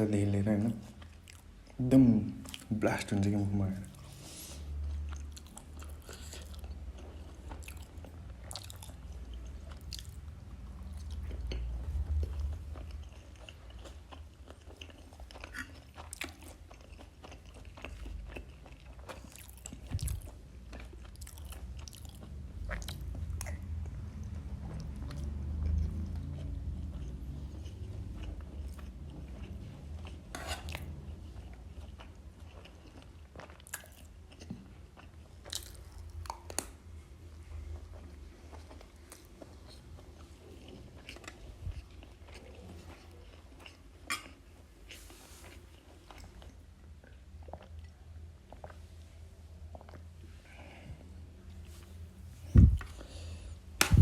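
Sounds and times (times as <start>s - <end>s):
person chewing and biting food: 4.7s - 36.9s.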